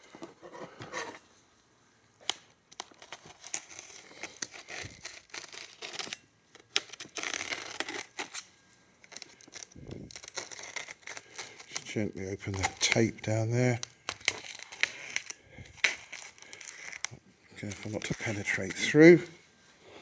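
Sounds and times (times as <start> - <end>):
packaging crinkling and tearing: 2.2 - 19.4.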